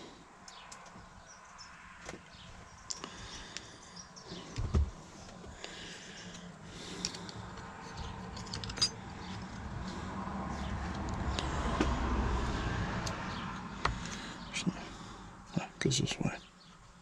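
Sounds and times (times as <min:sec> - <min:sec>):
parts clicking and tapping: 0:00.4 - 0:01.0, 0:06.3 - 0:09.4.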